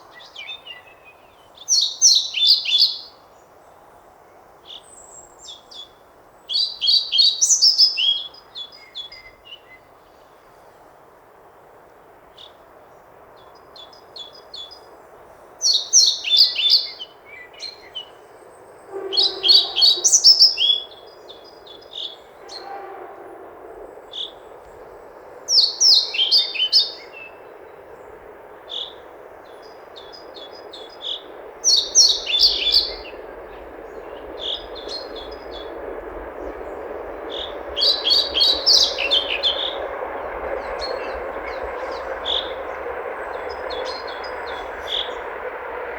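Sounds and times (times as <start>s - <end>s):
flycatcher singing: 18.9s - 20.9s, 31.0s - 33.3s.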